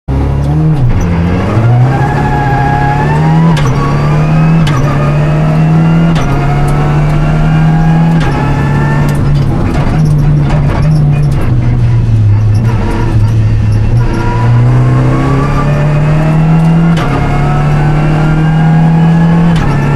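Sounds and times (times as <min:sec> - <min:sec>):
rally car engine accelerating: 0:00.1 - 0:19.9.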